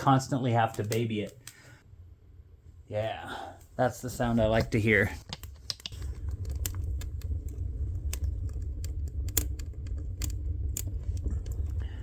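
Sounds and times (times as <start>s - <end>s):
wood fire crackling and popping: 0.0s - 1.7s, 4.1s - 12.0s
low fire rumble: 2.1s - 12.0s.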